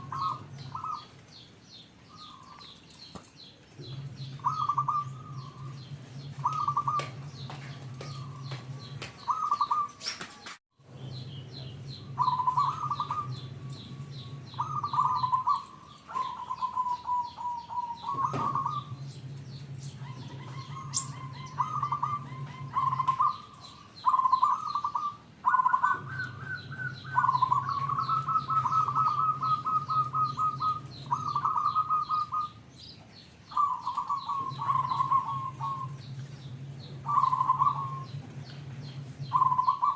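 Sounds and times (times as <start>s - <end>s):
dove cooing: 0.0s - 1.2s, 3.8s - 10.2s, 11.2s - 32.6s, 33.5s - 39.9s
low hum: 3.6s - 9.3s, 10.8s - 24.9s, 33.9s - 39.9s.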